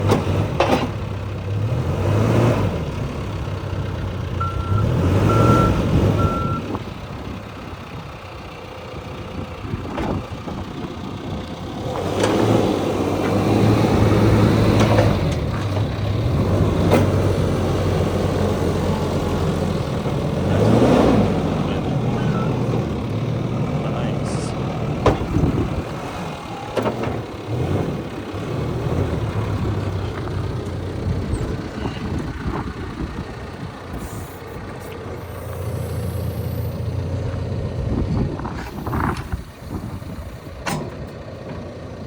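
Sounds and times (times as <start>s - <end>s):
diesel engine running: 0.0s - 42.0s
backup alarm beeping: 4.4s - 6.8s, 21.8s - 22.7s.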